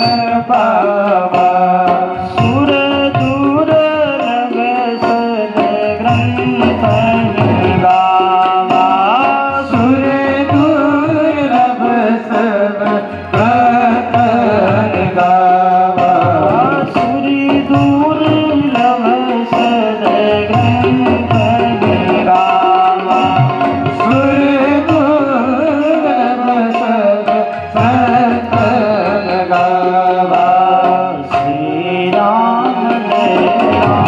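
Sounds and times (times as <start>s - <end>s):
held drone tone: 0.0s - 0.5s
person singing devotional song: 0.0s - 34.0s
tabla strokes: 0.0s - 34.0s.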